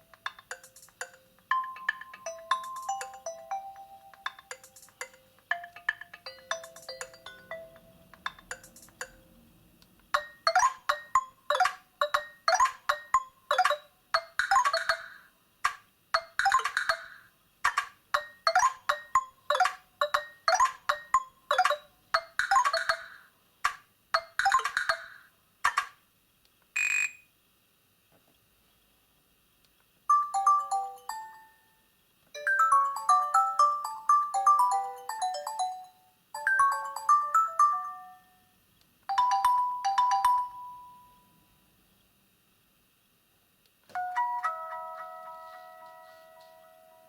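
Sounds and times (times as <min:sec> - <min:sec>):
phone ringtone melody: 0:00.5 - 0:09.0, 0:10.2 - 0:15.2, 0:18.2 - 0:23.2, 0:30.1 - 0:31.6, 0:32.4 - 0:38.4, 0:39.1 - 0:41.3.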